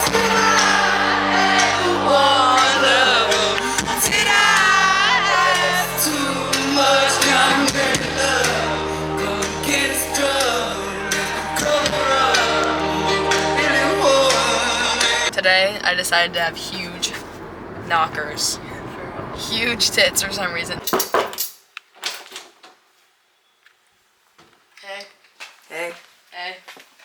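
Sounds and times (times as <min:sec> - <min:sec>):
person singing: 0:00.0 - 0:15.3
low bass notes: 0:00.0 - 0:20.9.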